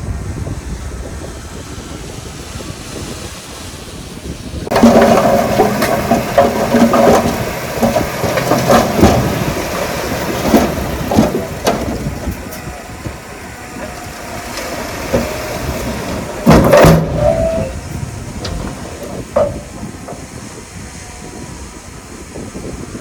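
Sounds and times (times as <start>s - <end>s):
metallic clanks: 4.7s - 20.8s
heavy machine engine drone: 4.7s - 23.0s.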